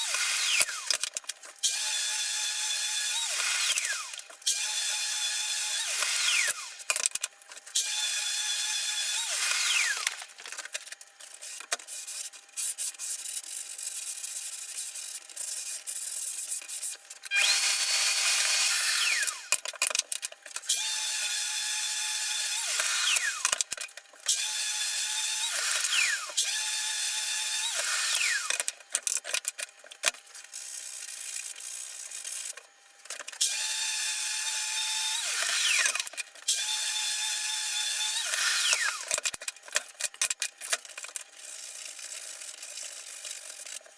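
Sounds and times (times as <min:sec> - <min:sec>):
cordless drill driving screws: 0:00.0 - 0:01.0, 0:01.6 - 0:06.8, 0:07.8 - 0:10.3, 0:17.3 - 0:19.6, 0:20.6 - 0:23.6, 0:24.3 - 0:28.7, 0:33.4 - 0:39.3.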